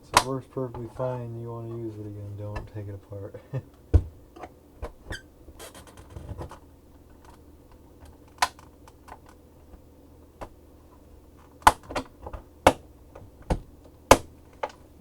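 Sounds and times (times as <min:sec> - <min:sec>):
plastic case scraping: 0:05.6 - 0:06.6
plastic clips snapping: 0:08.0 - 0:09.4, 0:11.5 - 0:12.1, 0:13.5 - 0:14.8.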